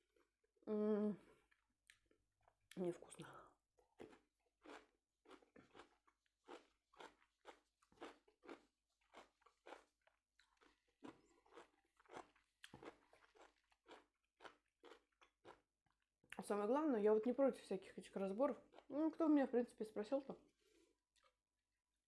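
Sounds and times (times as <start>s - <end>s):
chewing crunchy food: 1.4s - 16.4s, 18.5s - 19.0s, 21.1s - 21.4s.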